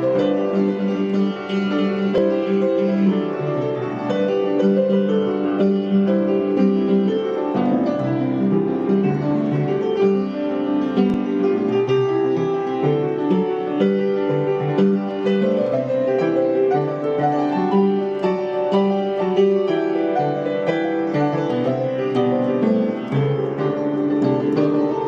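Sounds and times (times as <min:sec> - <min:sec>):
solo piano playing: 0:00.0 - 0:25.0.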